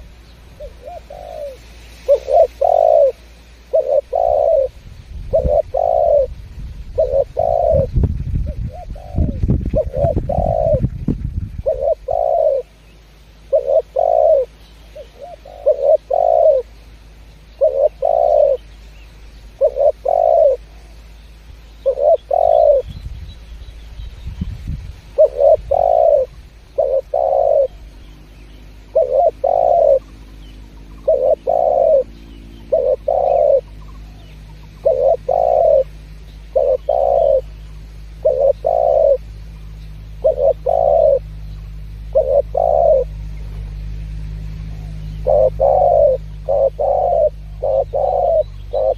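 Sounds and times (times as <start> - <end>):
dove cooing: 0.0 - 18.8, 19.5 - 21.0, 21.8 - 23.0, 25.1 - 48.9
faint low hum: 0.0 - 48.9.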